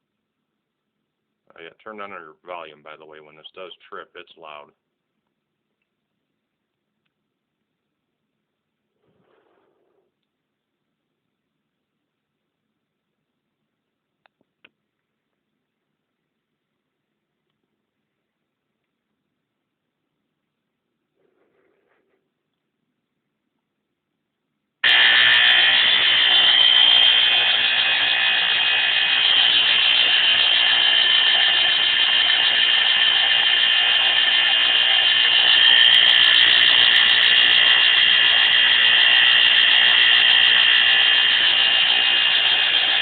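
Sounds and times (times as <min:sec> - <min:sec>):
smoke alarm buzzing: 0:24.8 - 0:43.0.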